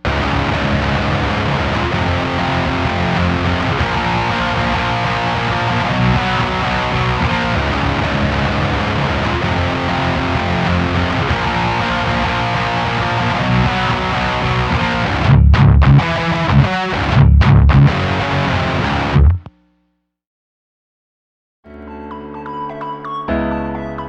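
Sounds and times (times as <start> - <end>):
electric guitar chords: 0.0 - 19.5.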